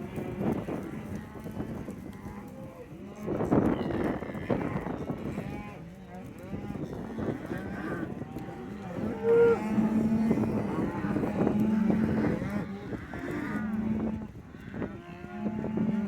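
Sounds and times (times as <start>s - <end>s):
cattle mooing and bellowing: 6.5s - 16.0s.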